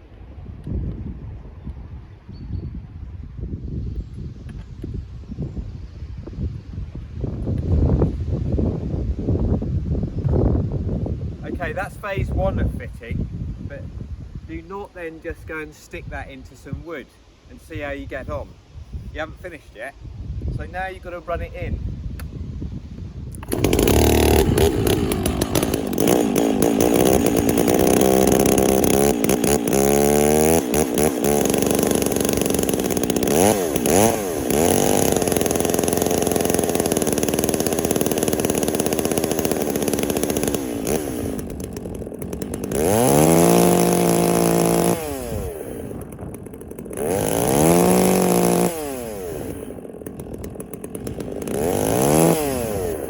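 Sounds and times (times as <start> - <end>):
chainsaw revving: 23.3 - 53.0.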